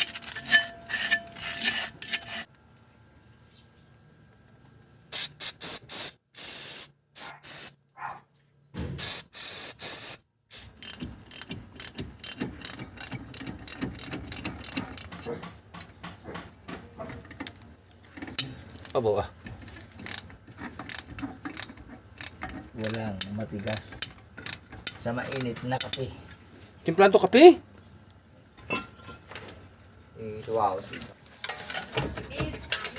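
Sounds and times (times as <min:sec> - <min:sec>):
hand tool scraping: 0:00.0 - 0:02.5, 0:30.8 - 0:32.9
ratchet wrench clicking: 0:05.1 - 0:07.7, 0:09.0 - 0:15.2, 0:20.0 - 0:20.2, 0:20.8 - 0:26.0.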